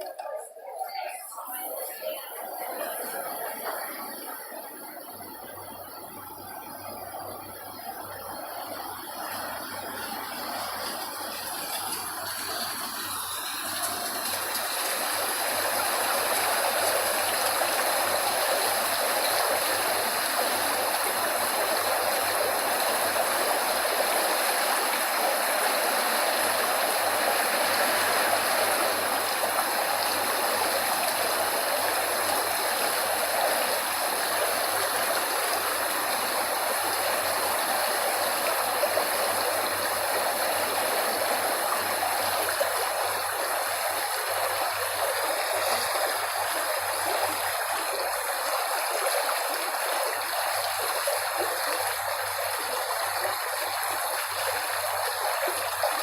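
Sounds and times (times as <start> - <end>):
stream water rushing: 0.0 - 56.0.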